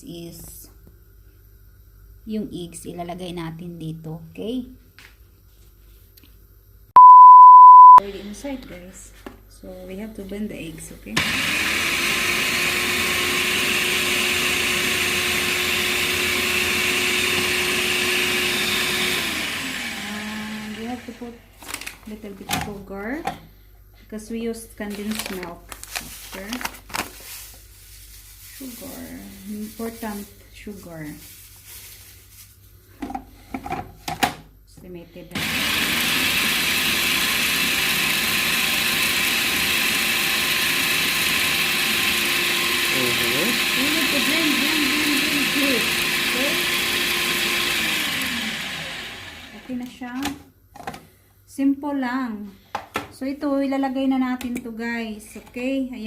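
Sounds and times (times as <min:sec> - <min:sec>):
electric blender running: 0:11.2 - 0:21.8, 0:35.3 - 0:49.8.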